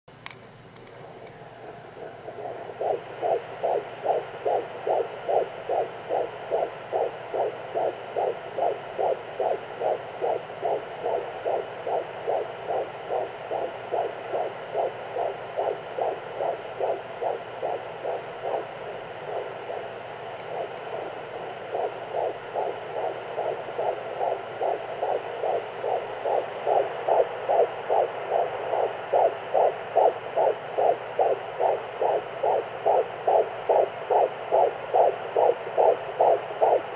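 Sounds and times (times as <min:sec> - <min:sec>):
fetal heartbeat whooshing pulses: 0:01.0 - 0:36.9.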